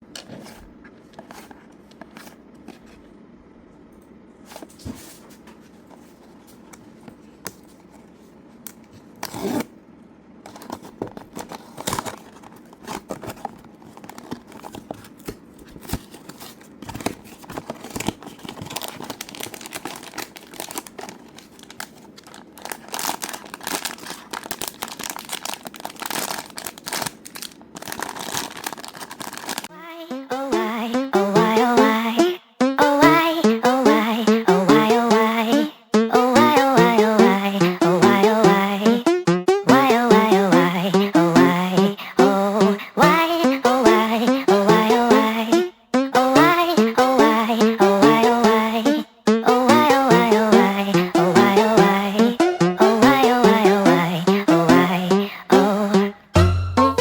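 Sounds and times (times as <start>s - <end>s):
packaging crinkling and tearing: 10.5s - 29.7s.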